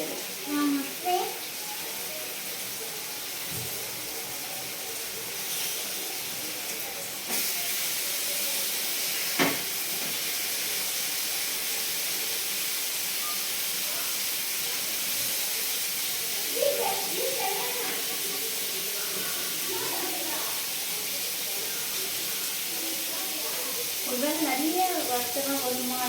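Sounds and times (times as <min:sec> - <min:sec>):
fish sizzling in hot oil: 0:00.0 - 0:26.0.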